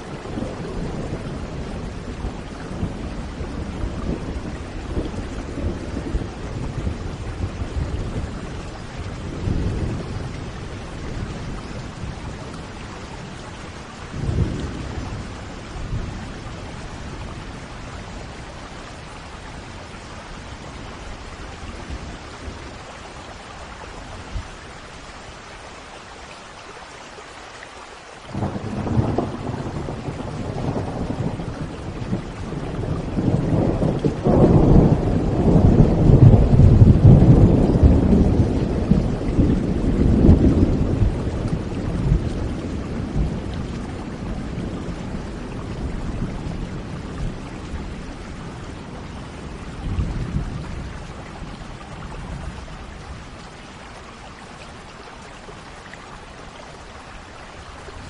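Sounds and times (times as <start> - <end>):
rolling thunder: 0.0 - 18.4, 28.3 - 53.4
steady rain: 0.0 - 58.0
loud thunderclap: 28.3 - 45.5.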